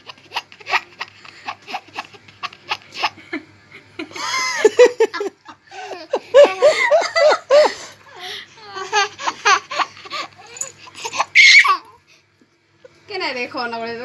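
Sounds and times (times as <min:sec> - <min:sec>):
baby laughing: 0:00.0 - 0:03.4, 0:04.6 - 0:12.0.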